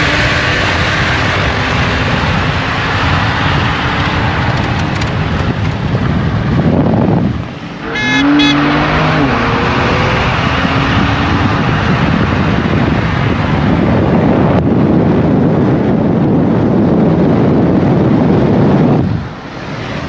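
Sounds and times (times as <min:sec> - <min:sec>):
car and wind rushing: 0:00.0 - 0:20.0
car horn toot: 0:07.8 - 0:09.0.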